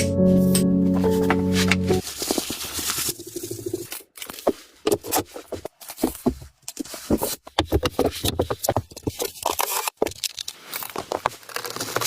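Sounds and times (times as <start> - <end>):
background music: 0.0 - 2.0.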